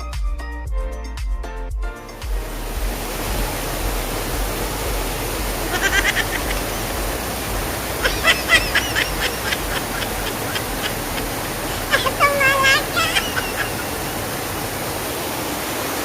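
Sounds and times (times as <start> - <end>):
stream water rushing: 2.2 - 16.0.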